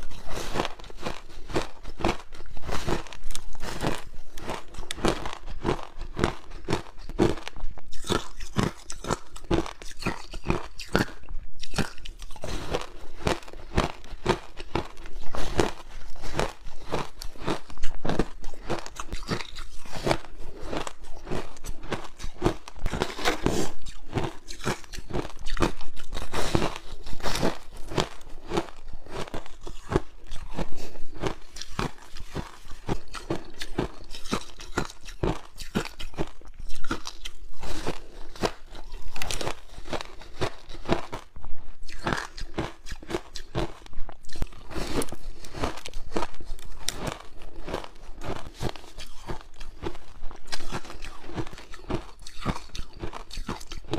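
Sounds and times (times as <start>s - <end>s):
ice crunching in mouth: 0.0s - 53.9s.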